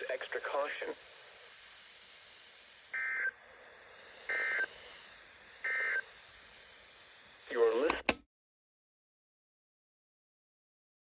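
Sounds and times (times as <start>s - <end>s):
faint steady hiss: 0.0s - 8.1s.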